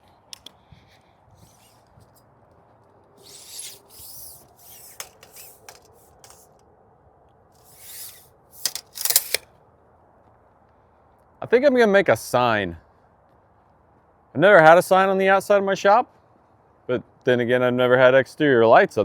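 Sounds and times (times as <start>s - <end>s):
scraping on wood: 3.2s - 6.6s, 7.6s - 9.4s.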